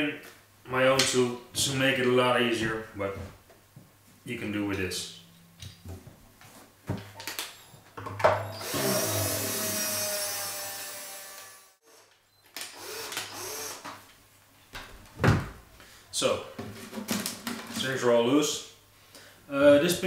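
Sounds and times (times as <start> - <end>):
power tool whirring: 8.4 - 14.0.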